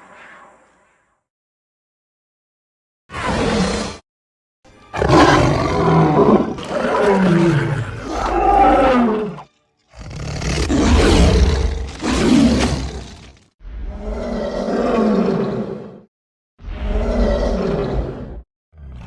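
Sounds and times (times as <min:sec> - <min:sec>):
lion roaring and growling: 0:03.1 - 0:04.0, 0:04.9 - 0:16.1, 0:16.7 - 0:19.0.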